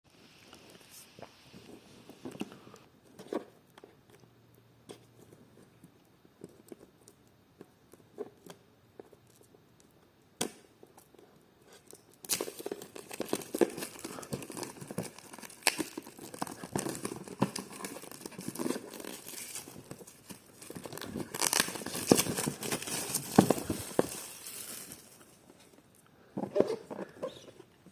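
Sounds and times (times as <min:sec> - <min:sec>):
wrapping crinkling and tearing: 0:10.8 - 0:26.0.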